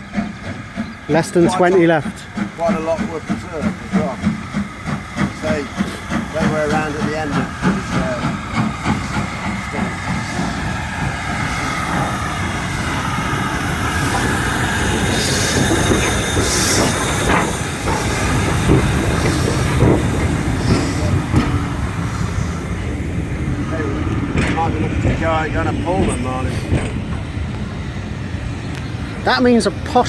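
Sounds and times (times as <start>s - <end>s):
train coaches rumbling slowly: 0.0s - 30.0s
wheels squealing on rails: 0.0s - 30.0s
clicks over rail joints: 14.0s - 21.8s.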